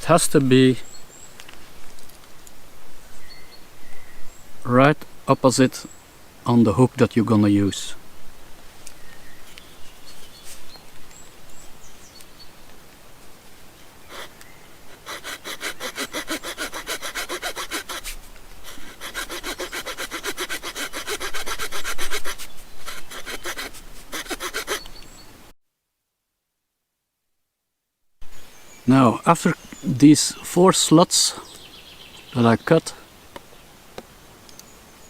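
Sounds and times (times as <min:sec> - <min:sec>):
saw cutting wood: 0:14.1 - 0:24.9
light scraping on wood: 0:14.1 - 0:25.1.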